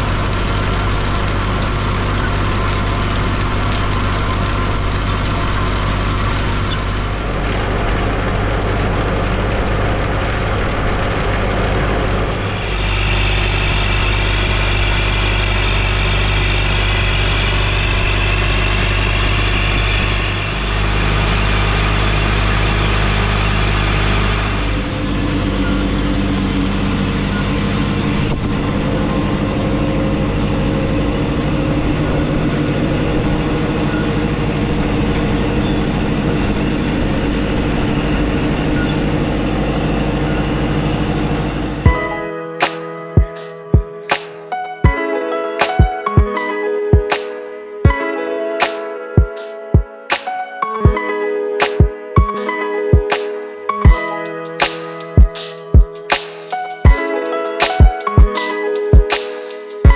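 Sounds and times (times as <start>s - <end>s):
tractor engine running: 0.0s - 44.2s, 53.8s - 59.9s
high hiss: 54.0s - 59.9s.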